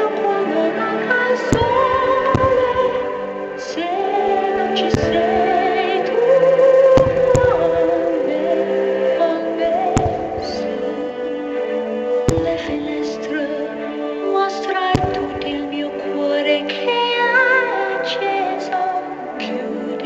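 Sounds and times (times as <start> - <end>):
operatic music with choir: 0.0 - 20.0
firework bangs: 1.5 - 3.2, 4.8 - 5.9, 6.9 - 8.0, 9.9 - 10.8, 12.2 - 13.2, 15.0 - 15.8.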